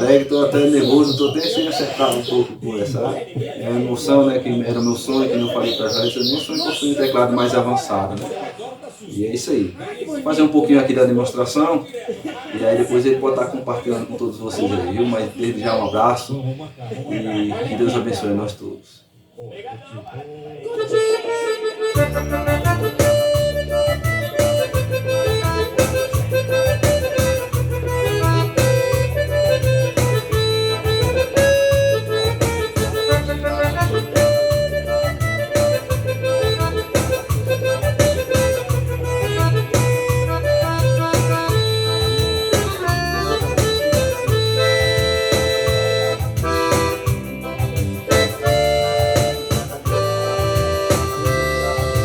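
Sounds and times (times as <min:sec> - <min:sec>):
keyboard melody: 0:00.0 - 0:02.5, 0:04.4 - 0:07.7, 0:20.8 - 0:52.0
bass line: 0:22.0 - 0:52.0
drum beat: 0:22.0 - 0:52.0.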